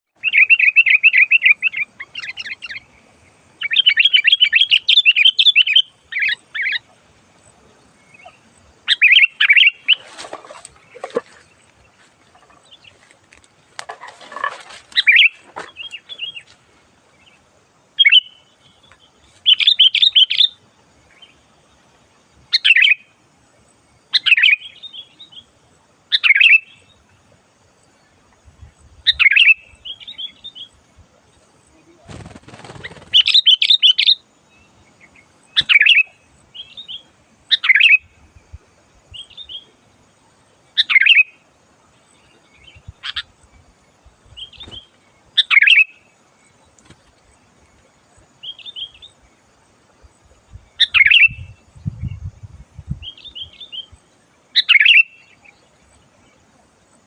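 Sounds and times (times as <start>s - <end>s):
bird chattering song: 8.0s - 13.0s, 13.9s - 16.5s, 18.0s - 20.6s, 31.7s - 38.1s, 44.3s - 46.0s, 54.6s - 55.6s
brief rustling: 9.9s - 11.5s.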